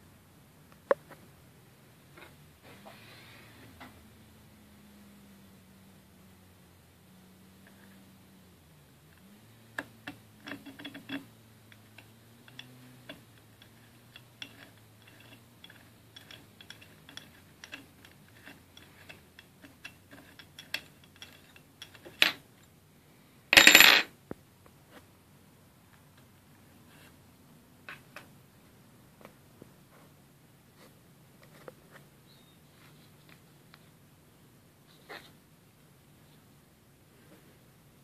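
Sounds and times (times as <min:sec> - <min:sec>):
metallic clatter: 0:10.1 - 0:22.4.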